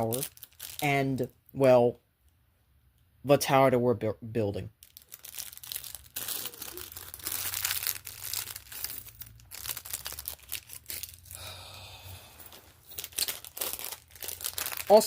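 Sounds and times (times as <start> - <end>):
plastic bag crinkling: 0.0 - 0.9, 4.8 - 11.4, 12.4 - 15.0.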